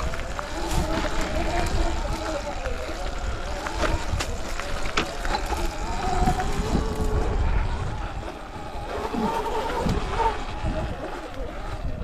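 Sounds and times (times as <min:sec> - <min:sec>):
electric motor whine: 0:00.0 - 0:12.0
wind buffeting microphone: 0:00.0 - 0:12.0.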